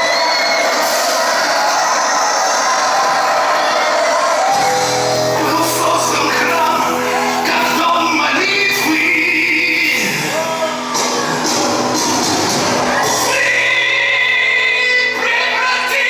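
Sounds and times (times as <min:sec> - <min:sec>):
live rock band playing: 0:04.5 - 0:16.0
cast singing: 0:04.6 - 0:12.0.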